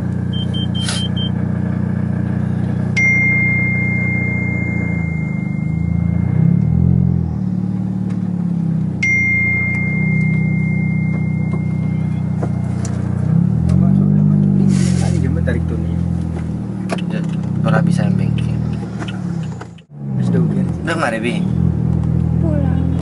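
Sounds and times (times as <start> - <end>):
vehicle engine humming: 0.0 - 23.0
short beep: 0.3 - 1.4, 3.0 - 7.0, 9.0 - 12.8
bell-like dings: 3.0 - 6.7, 9.0 - 12.9.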